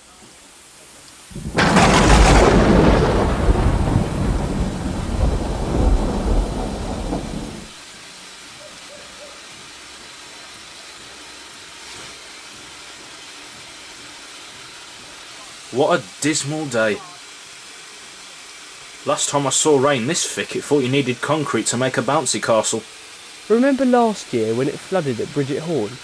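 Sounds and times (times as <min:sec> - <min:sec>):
heavy rain hissing: 0:00.0 - 0:26.0
thunderclap rumbling: 0:01.3 - 0:07.8.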